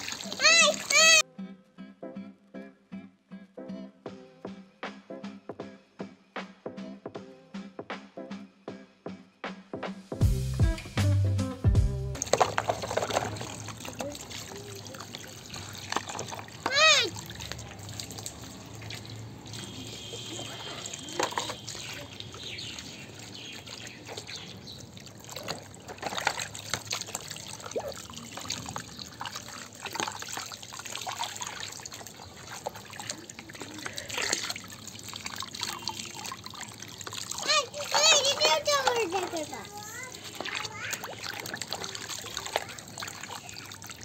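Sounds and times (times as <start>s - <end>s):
water trickling and splashing: 0.0s - 1.2s, 12.1s - 44.0s
small knocks and clatters: 12.2s - 13.6s.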